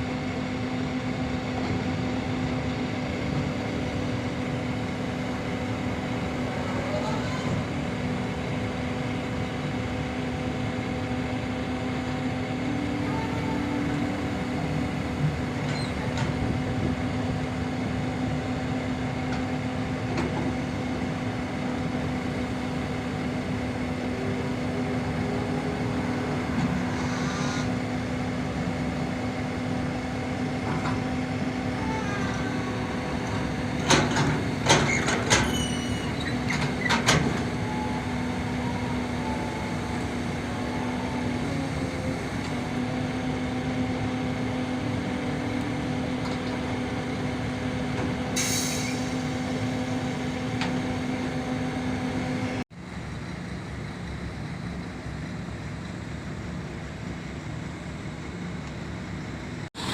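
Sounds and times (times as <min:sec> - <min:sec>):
excavator diesel engine: 0:00.0 - 0:59.9
metal clanks and squeals: 0:06.4 - 0:08.1, 0:15.5 - 0:16.4, 0:26.6 - 0:28.0, 0:31.7 - 0:39.8, 0:48.4 - 0:49.3.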